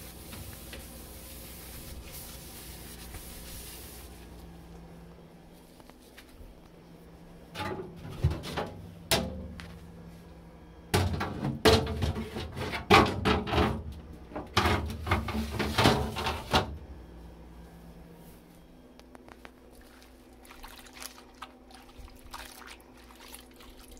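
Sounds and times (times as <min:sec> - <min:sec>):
refrigerator drawers clattering: 0:07.5 - 0:09.6, 0:10.9 - 0:16.8.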